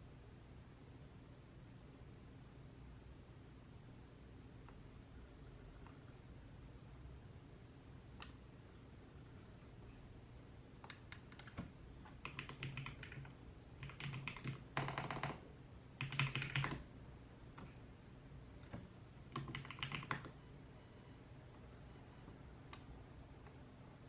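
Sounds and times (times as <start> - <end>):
typing on computer keyboard: 10.8 - 15.4, 16.0 - 16.9, 18.6 - 20.4.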